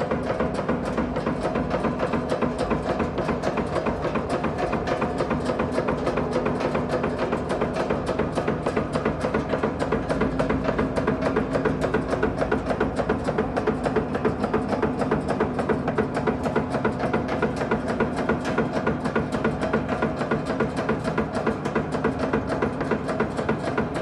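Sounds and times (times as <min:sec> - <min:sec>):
nail-making machine knocking: 0:00.0 - 0:24.0.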